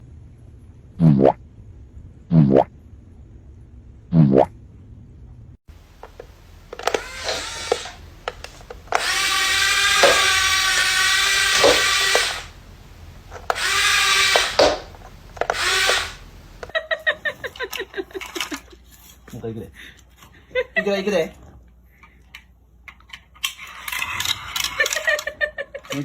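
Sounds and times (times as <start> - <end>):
small electric motor whining: 5.8 - 16.7.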